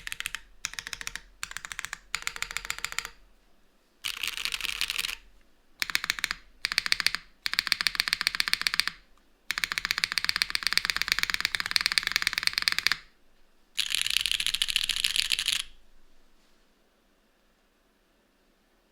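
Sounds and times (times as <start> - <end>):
fast typing on mechanical keyboard: 0.0 - 3.2, 4.0 - 13.1, 13.8 - 15.8.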